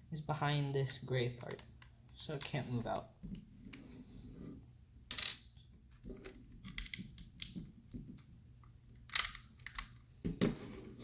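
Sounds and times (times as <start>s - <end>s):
plastic bricks clicking: 9.0s - 10.0s.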